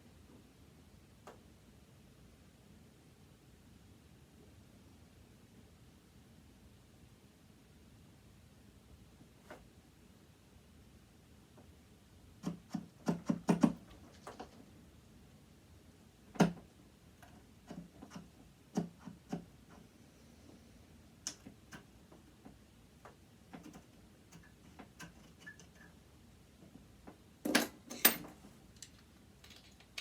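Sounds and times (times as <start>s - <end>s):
metal parts clicking and knocking: 27.4s - 30.0s.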